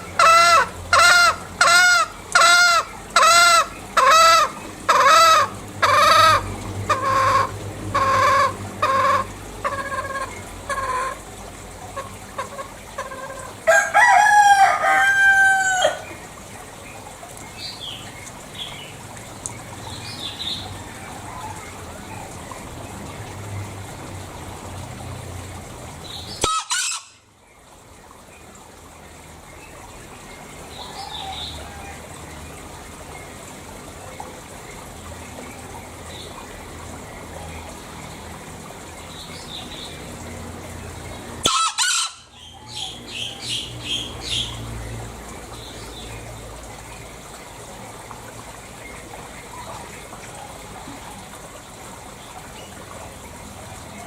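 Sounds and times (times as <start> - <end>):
drawn-out crow: 0.0 - 11.2, 12.0 - 16.1, 26.0 - 27.2, 41.4 - 43.5
junglefowl cackling calls: 0.0 - 11.2, 11.9 - 16.2, 26.0 - 27.2, 41.4 - 44.5.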